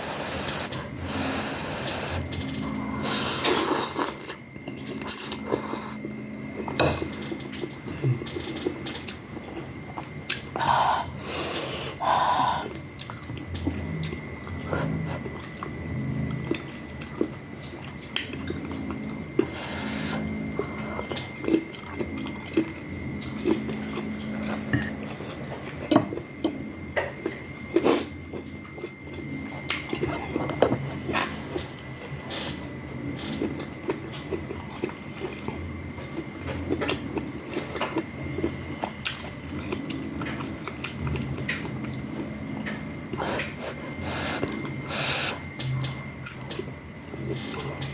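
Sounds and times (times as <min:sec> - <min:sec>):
faint high whine: 0:00.0 - 0:47.9
person chewing: 0:12.7 - 0:19.6, 0:27.2 - 0:45.6.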